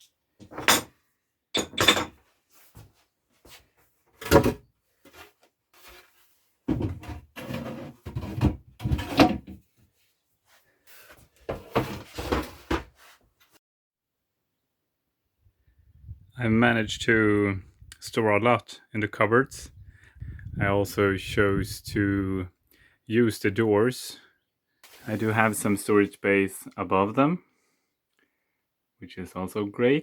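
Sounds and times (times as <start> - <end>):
items knocking on cupboard shelves: 6.7 - 9.5.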